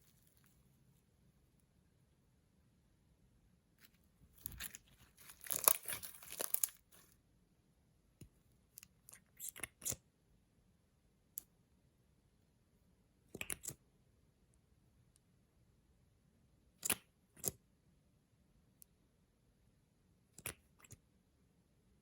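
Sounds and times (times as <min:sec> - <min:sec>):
slime crackling and crinkling: 0:04.3 - 0:07.1.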